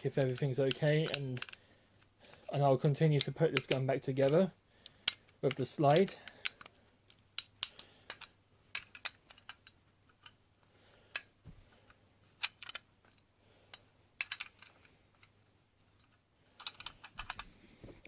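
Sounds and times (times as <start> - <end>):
pistol parts clicking and tapping: 0.2 - 2.4, 3.2 - 10.4, 12.4 - 14.9, 16.0 - 17.5.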